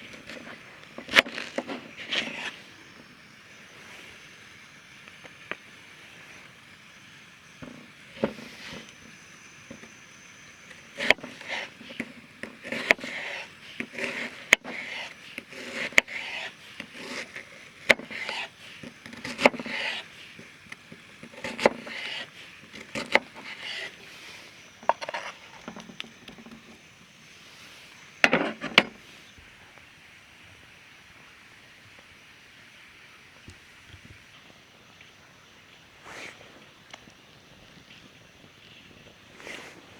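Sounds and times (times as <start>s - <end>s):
cookware scraping: 0.0s - 2.7s, 24.8s - 26.8s, 28.2s - 29.0s.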